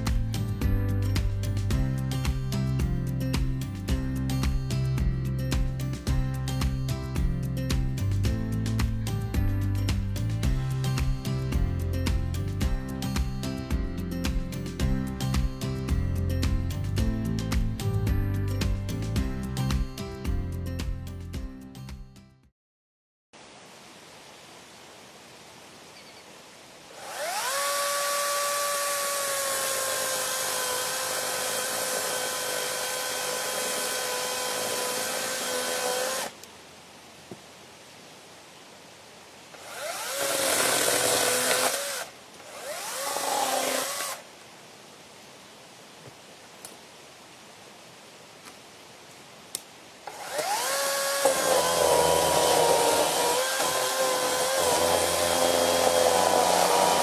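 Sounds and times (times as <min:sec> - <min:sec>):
electric chainsaw motor whining: 0:27.0 - 0:36.3, 0:39.6 - 0:44.2, 0:50.0 - 0:57.0.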